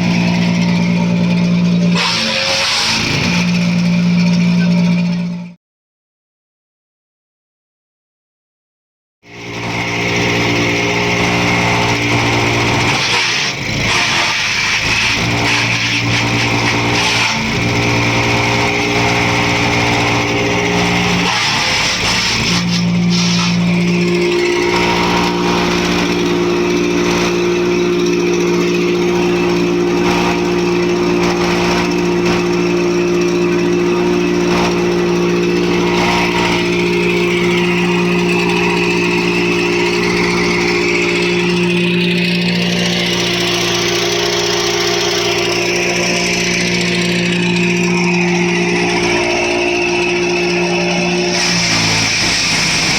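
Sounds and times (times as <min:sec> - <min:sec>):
wood chipper engine running: 0:00.0 - 0:05.6, 0:09.3 - 0:52.9.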